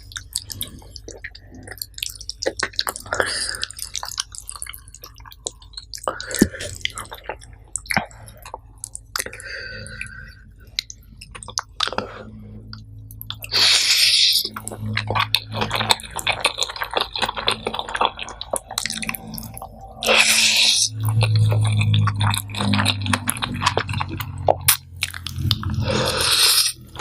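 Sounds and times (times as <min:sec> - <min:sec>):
wet chewing and mouth smacking: 0:00.0 - 0:27.0.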